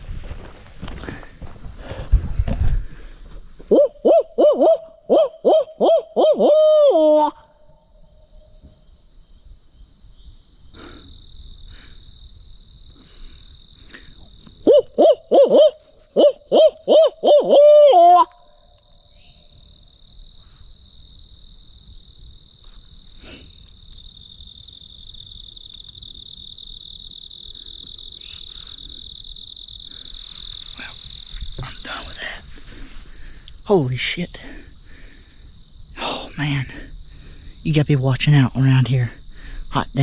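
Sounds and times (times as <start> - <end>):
insects trilling: 0.0 - 40.0
owl hooting: 3.7 - 7.6, 14.6 - 19.4.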